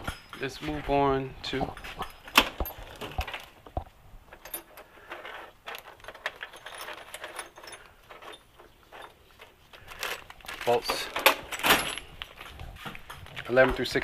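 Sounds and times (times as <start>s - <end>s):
metal tools clinking: 0.0s - 3.7s, 4.3s - 14.0s.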